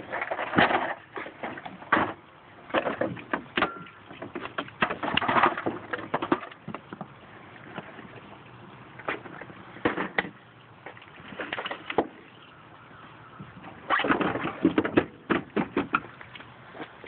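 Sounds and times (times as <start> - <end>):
knocks and rustles of handling: 0.0 - 12.2.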